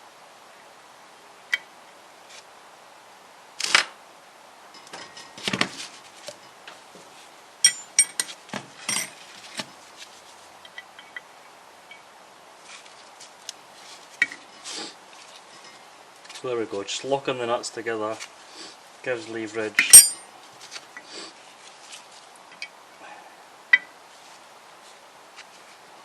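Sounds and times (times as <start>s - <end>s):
metal spanners and nuts clinking: 7.6s - 9.2s, 19.8s - 20.2s.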